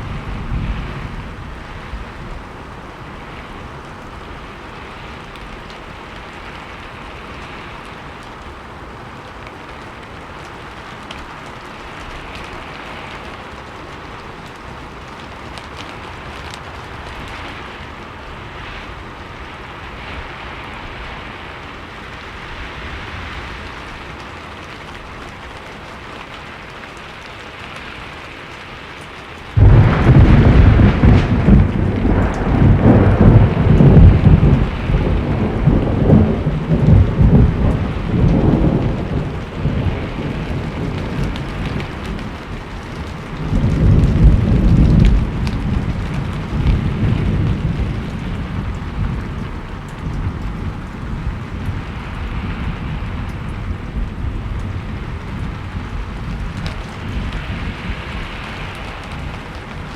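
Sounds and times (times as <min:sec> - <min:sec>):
steady rainfall: 0:00.0 - 0:59.9
loud thunder crash: 0:29.6 - 0:41.9.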